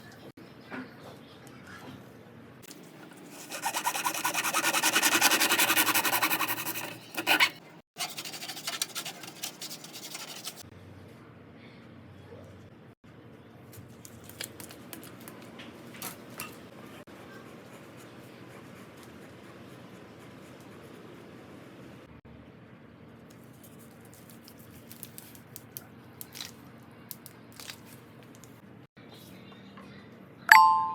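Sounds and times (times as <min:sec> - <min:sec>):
abrasive rubbing on hard surface: 0:03.0 - 0:10.6.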